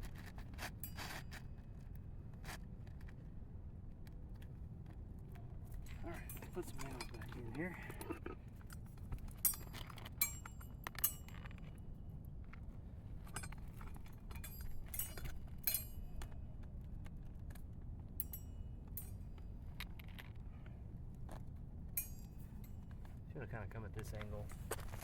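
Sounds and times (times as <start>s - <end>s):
metallic clinks of nails: 9.4s - 11.6s, 13.3s - 16.3s, 18.2s - 19.4s, 22.0s - 22.8s.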